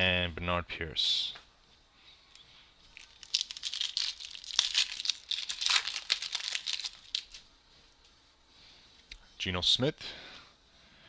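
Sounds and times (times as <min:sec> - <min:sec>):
foil wrapper tearing and crinkling: 0:03.0 - 0:07.4.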